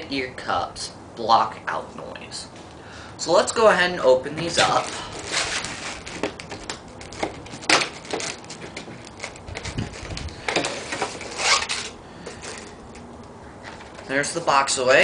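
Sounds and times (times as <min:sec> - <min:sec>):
packaging rustling and clicking: 0:04.5 - 0:13.1
packaging ripping: 0:04.6 - 0:12.0.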